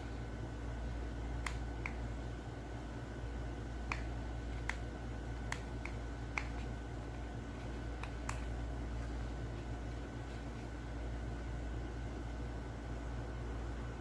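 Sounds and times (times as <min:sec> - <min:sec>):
steady low hum: 0:00.0 - 0:14.0
sharp clicks: 0:03.9 - 0:06.7.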